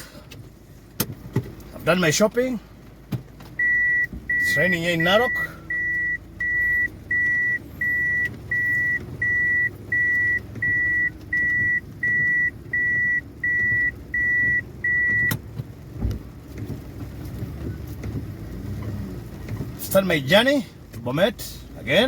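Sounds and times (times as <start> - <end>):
vehicle engine running low: 0.0 - 22.0
car warning chime beeping: 3.6 - 15.4.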